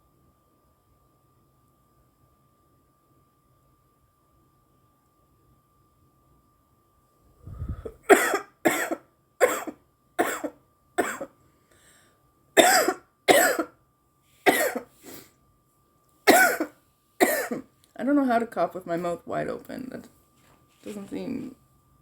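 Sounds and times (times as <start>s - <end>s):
woman coughing hard: 7.8s - 11.3s, 12.6s - 13.8s, 14.5s - 14.9s, 16.3s - 17.7s.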